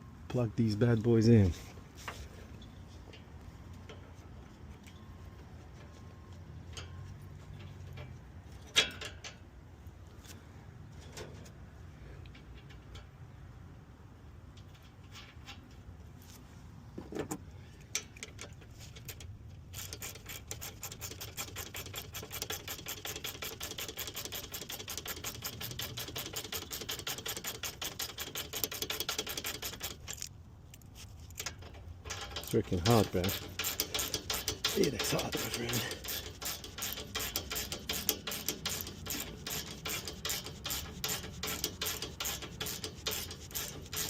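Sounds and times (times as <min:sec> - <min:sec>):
ratchet wrench clicking: 0:18.0 - 0:30.3, 0:31.4 - 0:44.0.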